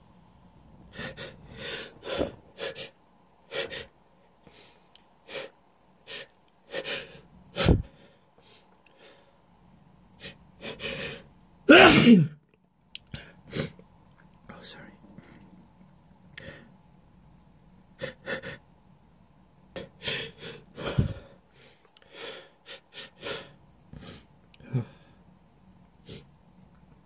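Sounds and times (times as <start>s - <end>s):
person gasping breaths: 0.9s - 9.4s, 10.2s - 11.8s, 19.8s - 25.2s
person sneezing: 11.7s - 12.4s.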